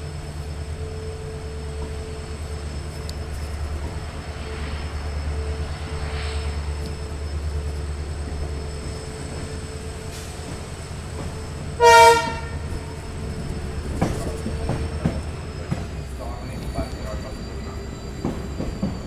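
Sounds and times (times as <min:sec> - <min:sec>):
low rumble of running train: 0:00.0 - 0:19.0
locomotive horn blast: 0:11.4 - 0:14.2.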